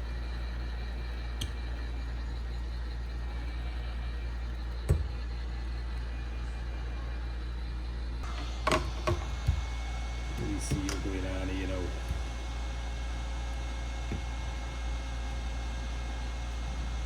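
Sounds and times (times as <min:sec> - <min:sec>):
heat gun blowing: 0:08.2 - 0:17.0.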